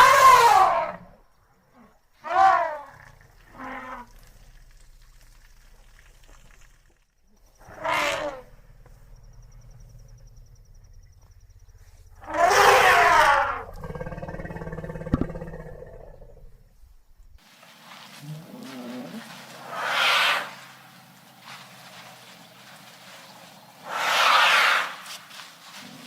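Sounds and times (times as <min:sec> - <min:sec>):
elephant trumpeting: 0:00.0 - 0:01.0, 0:07.6 - 0:08.5, 0:12.2 - 0:16.4, 0:18.2 - 0:20.6.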